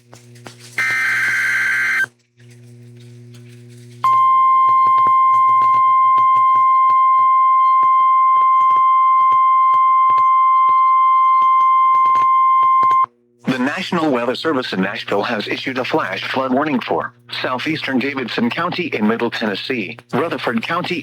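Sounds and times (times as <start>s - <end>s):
loud steady high alarm tone: 0.8s - 2.1s, 4.1s - 13.1s
radio static crackles: 0.8s - 2.1s, 4.1s - 21.0s.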